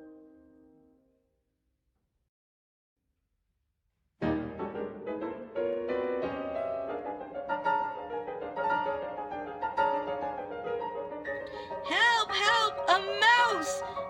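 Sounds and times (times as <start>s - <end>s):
piano music: 4.2s - 14.0s.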